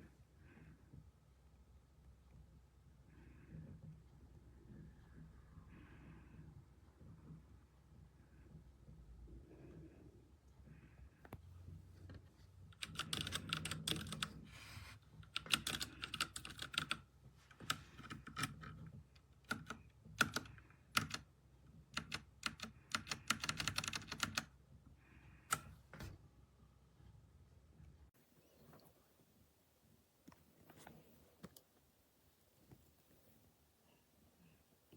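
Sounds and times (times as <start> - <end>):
mechanical keyboard typing: 12.7 - 14.5, 15.2 - 21.3, 21.9 - 24.5.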